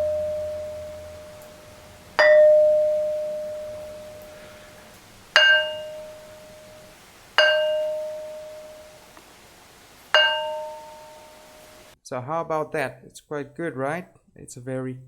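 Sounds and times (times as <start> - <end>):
ringing rock struck: 0.0 - 9.2, 10.1 - 11.8.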